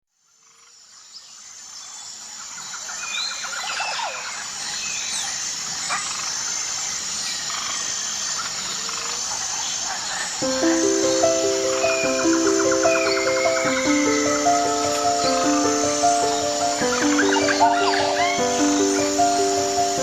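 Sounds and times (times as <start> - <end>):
steady outdoor hiss: 0.4 - 20.0
birds chirping and trilling: 10.1 - 20.0.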